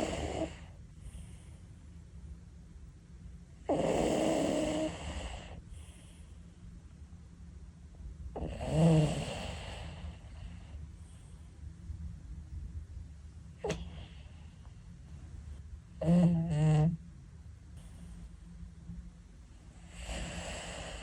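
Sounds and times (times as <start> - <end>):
cat snoring: 0.0 - 1.5, 3.6 - 6.3, 8.4 - 11.3, 13.6 - 14.4, 16.0 - 17.0, 19.8 - 21.0.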